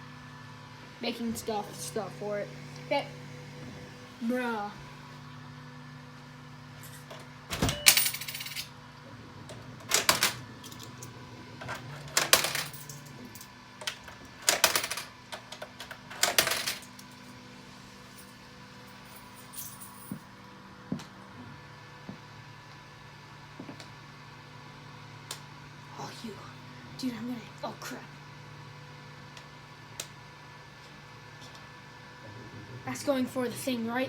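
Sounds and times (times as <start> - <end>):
steady low hum: 0.0 - 34.0
coins clattering into vending machine: 6.8 - 8.7, 9.8 - 17.2, 19.0 - 20.2.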